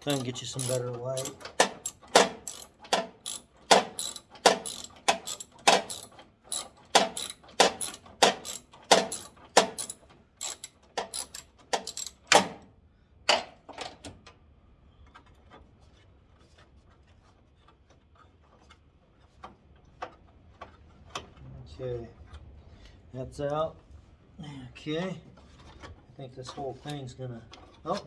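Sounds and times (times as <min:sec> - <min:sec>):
ratchet wrench clicking: 0:00.0 - 0:12.5.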